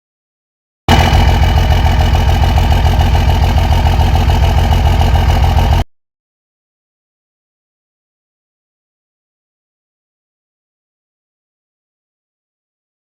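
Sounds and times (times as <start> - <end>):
diesel engine idling: 0.9 - 5.9.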